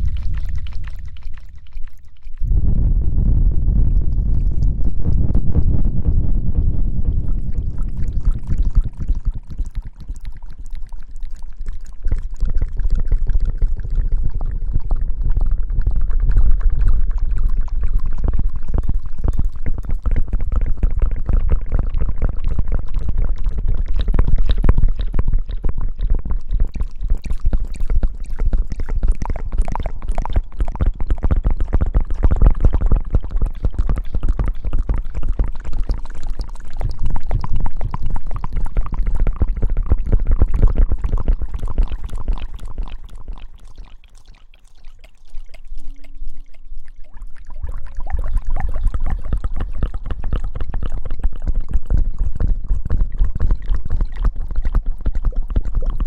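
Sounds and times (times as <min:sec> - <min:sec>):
deep rumble: 0:00.0 - 0:43.6.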